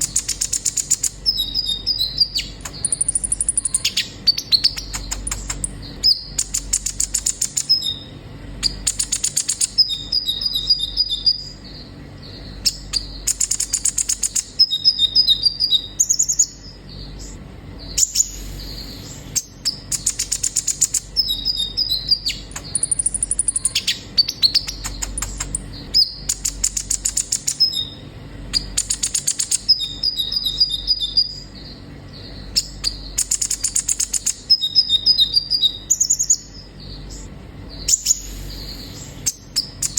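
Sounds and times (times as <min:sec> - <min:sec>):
bird singing high trills: 0:00.0 - 0:39.9.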